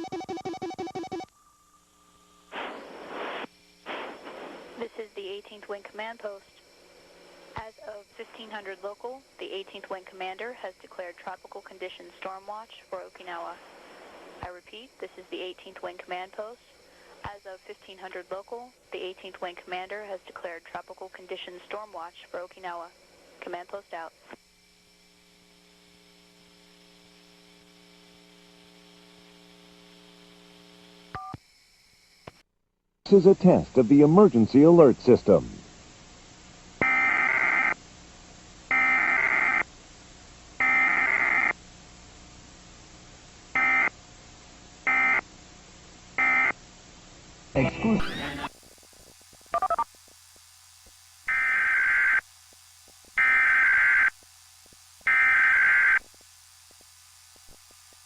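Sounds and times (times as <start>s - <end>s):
digital data tone bursts: 0.0s - 1.3s, 47.6s - 48.5s, 49.5s - 49.9s
faint electrical hum: 1.2s - 31.2s, 33.1s - 58.0s
broadcast line hiss: 1.7s - 31.2s, 33.1s - 39.7s, 40.6s - 41.6s, 46.2s - 58.0s
stutter of short tones: 47.6s - 48.5s.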